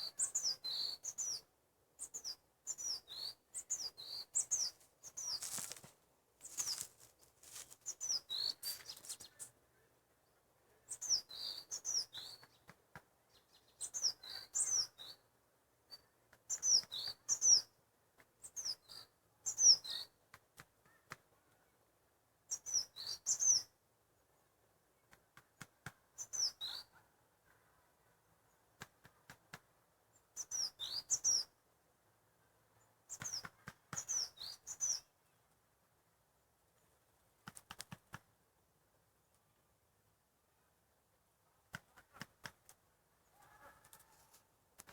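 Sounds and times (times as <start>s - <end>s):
songbird chirping: 0.0s - 17.8s, 20.9s - 25.2s, 30.0s - 31.6s, 32.2s - 37.1s.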